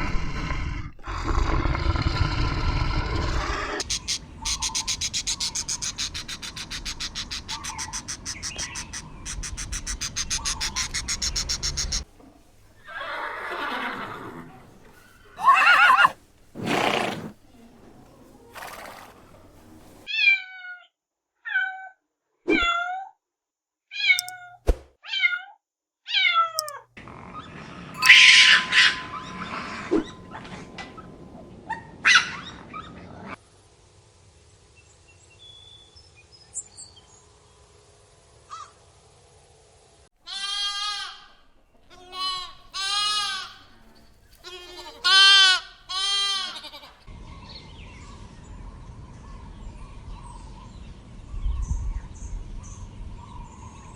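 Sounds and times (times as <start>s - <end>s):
high-pitched animal calls: 0.0s - 12.0s, 12.8s - 16.2s, 27.3s - 31.2s
longer rising and falling calls: 3.4s - 12.0s, 15.0s - 16.2s.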